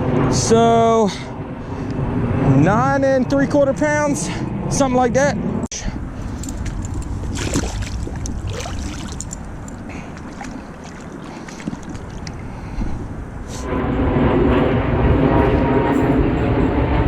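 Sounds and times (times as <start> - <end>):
low rumbling: 0.0 - 17.0
loud steady rumble with hum: 12.4 - 17.0.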